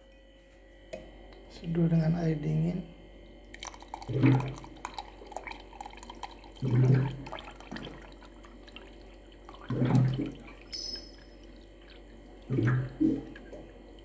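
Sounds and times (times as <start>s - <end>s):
water pouring and splashing: 3.6s - 10.8s.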